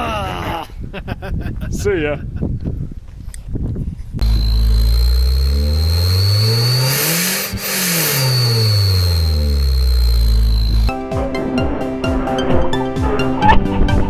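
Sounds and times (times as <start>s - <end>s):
car engine revving: 4.2s - 10.9s
high whistling tone: 4.2s - 10.9s
hiss: 4.2s - 10.9s.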